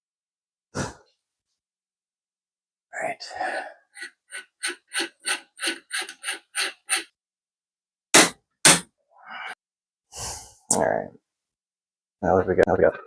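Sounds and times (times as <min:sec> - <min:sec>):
small hammer tapping a punch: 0:08.2 - 0:08.9.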